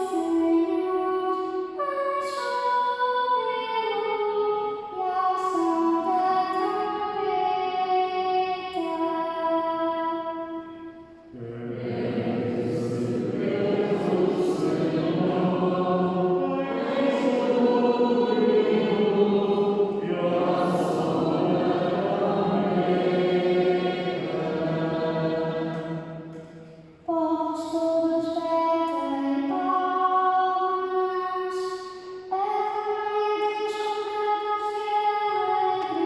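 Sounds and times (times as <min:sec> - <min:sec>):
choir singing: 0:11.2 - 0:26.8.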